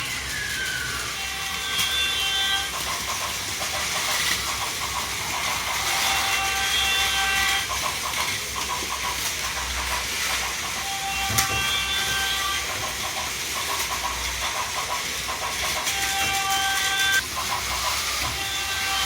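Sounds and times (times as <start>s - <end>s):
toy trains whirring on track: 0.0s - 19.0s
electronic train horn: 1.1s - 2.8s, 5.9s - 7.7s, 10.8s - 12.7s, 15.8s - 17.2s, 18.2s - 19.0s
toy level-crossing bell ringing: 5.3s - 8.2s, 15.5s - 19.0s.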